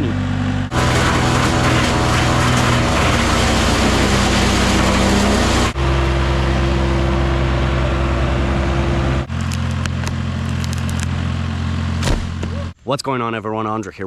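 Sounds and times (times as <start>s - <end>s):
gas engine running: 0.4s - 12.8s
sharp cracks: 0.7s - 6.2s.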